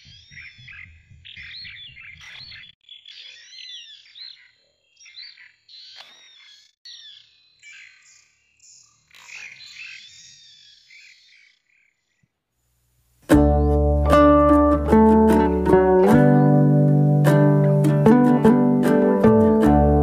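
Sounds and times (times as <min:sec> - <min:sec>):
songbirds chirping: 0:00.0 - 0:12.4.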